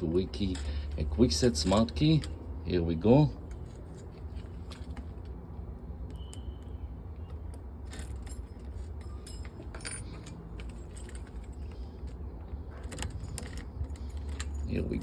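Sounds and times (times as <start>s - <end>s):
keys clinking in lock cylinder: 0.0s - 2.5s, 7.8s - 15.0s.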